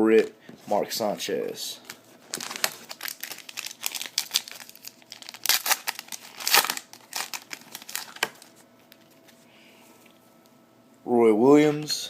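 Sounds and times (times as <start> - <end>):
foil wrapper crinkling and tearing: 2.3 - 8.6.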